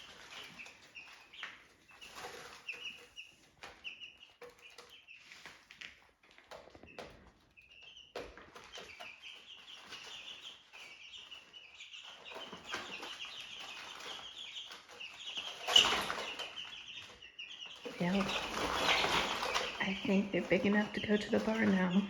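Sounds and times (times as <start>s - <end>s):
chicks peeping: 0.0s - 22.0s
rustling clatter: 0.0s - 22.0s.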